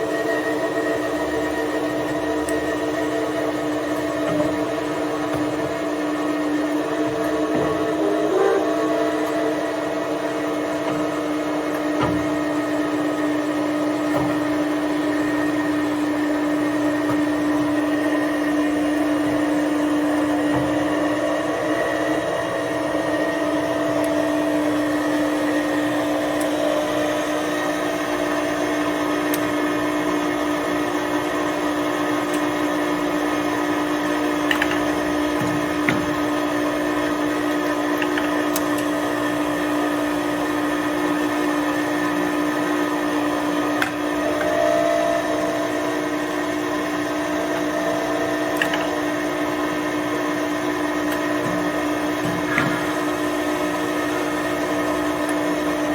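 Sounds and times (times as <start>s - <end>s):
lathe motor humming: 0.0s - 55.9s.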